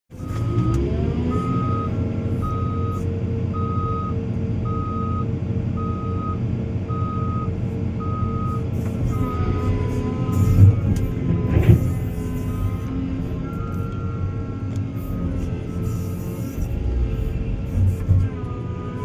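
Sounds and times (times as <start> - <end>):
diesel engine rumble: 0.1 - 19.0
backup alarm beeping: 1.3 - 10.8, 11.8 - 17.0.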